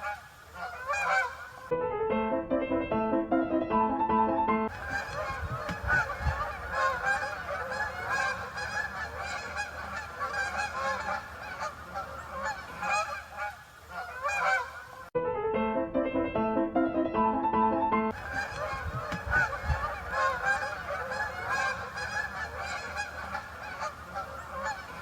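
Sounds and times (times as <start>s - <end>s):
geese honking: 0.0s - 1.8s, 3.8s - 15.2s, 18.1s - 25.0s
piano music: 1.7s - 11.0s, 15.2s - 23.9s.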